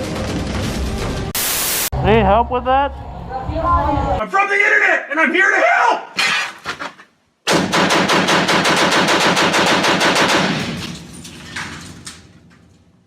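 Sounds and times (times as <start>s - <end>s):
automatic gunfire bursts: 7.5s - 10.7s.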